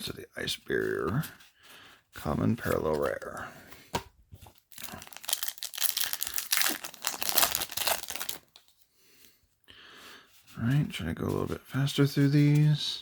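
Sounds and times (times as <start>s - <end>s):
foil wrapper crinkling and tearing: 4.7s - 8.7s.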